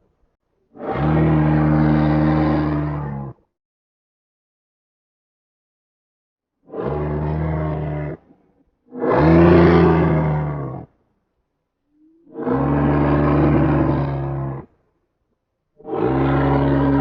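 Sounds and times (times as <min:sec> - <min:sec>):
toy dinosaur roar: 0:00.8 - 0:03.3, 0:09.0 - 0:10.9, 0:12.4 - 0:14.7, 0:15.8 - 0:17.0.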